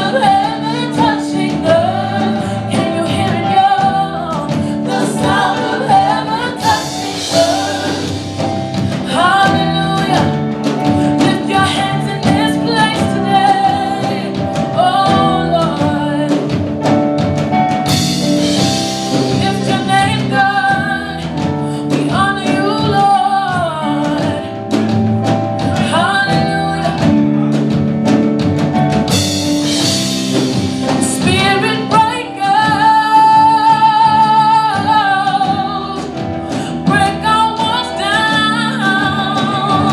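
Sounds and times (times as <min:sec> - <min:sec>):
person singing gospel: 0:00.0 - 0:16.5, 0:31.1 - 0:39.9
band accompaniment: 0:00.0 - 0:39.9.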